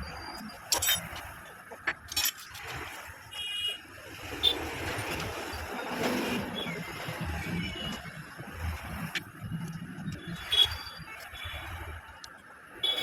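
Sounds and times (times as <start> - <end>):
background street noise: 0.0 - 13.0.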